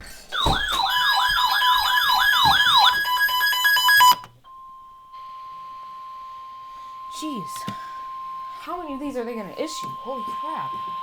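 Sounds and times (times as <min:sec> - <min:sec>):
electronic siren wailing: 0:00.3 - 0:04.3.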